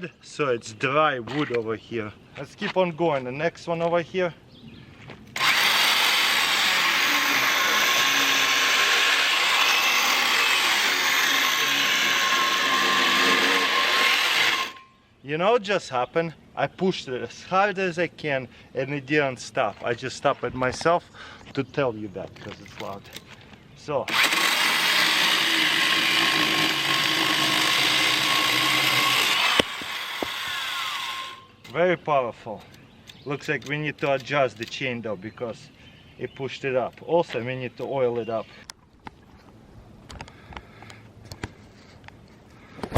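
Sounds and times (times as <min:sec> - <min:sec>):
electric chainsaw cutting log: 0:05.4 - 0:14.8, 0:24.1 - 0:31.5.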